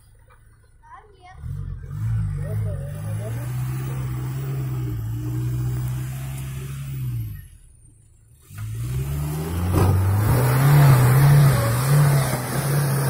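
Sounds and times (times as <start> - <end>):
off-road engine revving and straining: 0.0 - 13.0.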